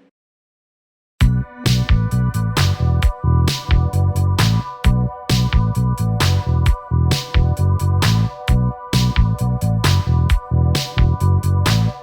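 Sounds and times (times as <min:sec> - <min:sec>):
deep bass line: 0:01.2 - 0:12.0
drum machine beat: 0:01.2 - 0:12.0.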